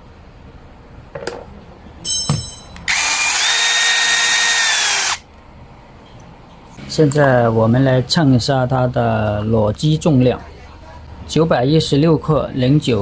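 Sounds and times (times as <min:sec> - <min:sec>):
cordless drill whining: 0:02.9 - 0:05.2.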